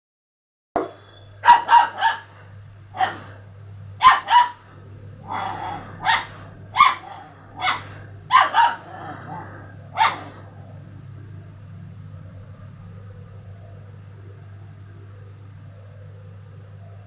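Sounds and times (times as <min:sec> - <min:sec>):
dog barking: 0:00.8 - 0:03.4, 0:04.0 - 0:10.6
steady low hum: 0:00.8 - 0:17.0.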